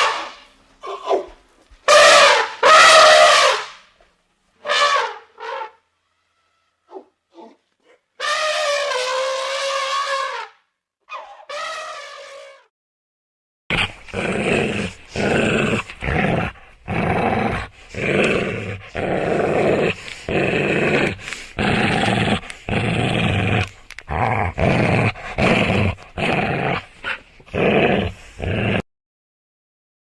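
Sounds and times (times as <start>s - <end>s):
dog growling: 13.7s - 28.8s.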